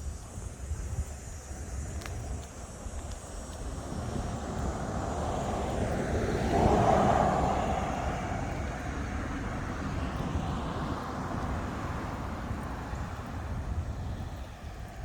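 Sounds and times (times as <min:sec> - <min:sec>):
vehicle passing: 0:04.0 - 0:13.6.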